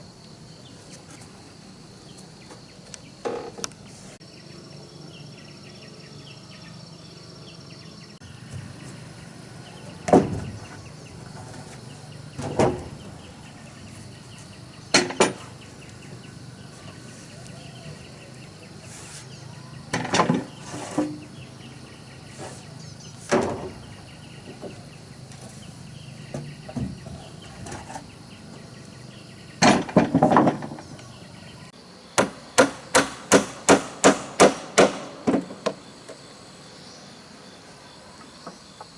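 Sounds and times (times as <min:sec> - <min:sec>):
insects chirping: 0:00.0 - 0:38.9
hammer striking timber: 0:32.2 - 0:35.8.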